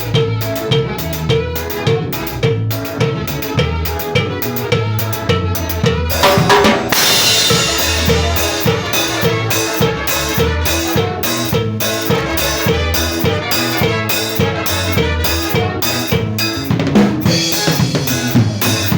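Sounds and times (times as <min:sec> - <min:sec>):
live band playing: 0:00.0 - 0:18.9
cymbal crash: 0:06.2 - 0:09.1.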